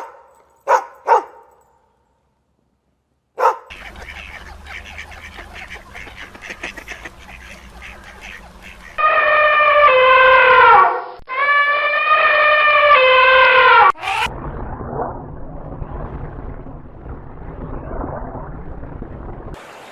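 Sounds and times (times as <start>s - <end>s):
dog barking: 0.0s - 1.6s, 3.4s - 3.8s
waterfowl quacking and honking: 3.7s - 9.2s.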